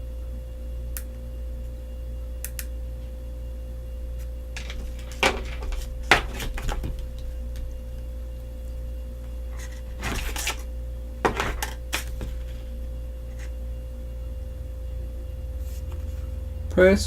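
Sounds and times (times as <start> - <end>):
low electrical hum: 0.0 - 17.0.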